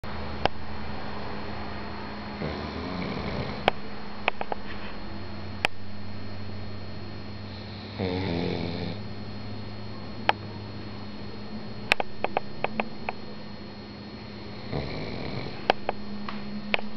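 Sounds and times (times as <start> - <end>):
faint steady hum: 0.0 - 16.9
dog snoring: 2.4 - 3.7, 7.5 - 9.0, 14.3 - 15.7
sharp clicks: 11.9 - 13.2.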